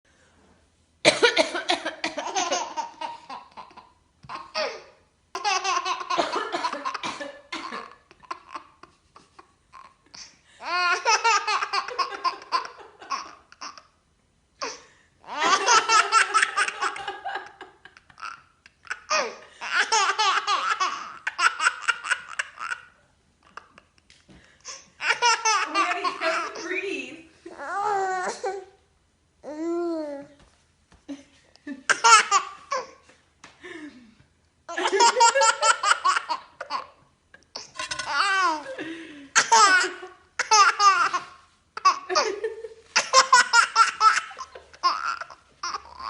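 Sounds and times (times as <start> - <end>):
person coughing: 1.1 - 2.1, 6.2 - 8.0
baby laughing: 1.7 - 14.0, 14.6 - 24.0, 25.0 - 26.8, 31.8 - 33.0, 34.8 - 46.0.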